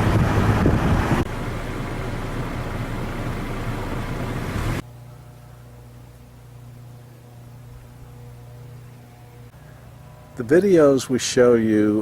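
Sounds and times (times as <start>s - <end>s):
wind buffeting microphone: 0.0s - 1.3s
low steady hum: 0.0s - 12.0s.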